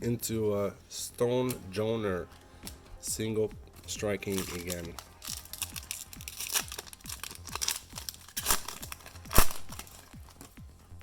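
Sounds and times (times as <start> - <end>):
background music with beat: 1.4 - 11.0
foil ripping: 4.2 - 10.5
foil wrapper crinkling: 4.2 - 10.6.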